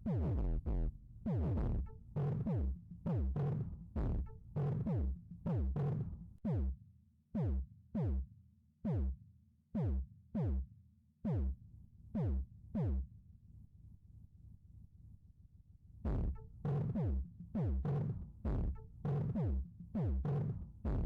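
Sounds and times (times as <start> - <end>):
electronic music with booming kicks: 0.1 - 1.9, 16.1 - 20.3.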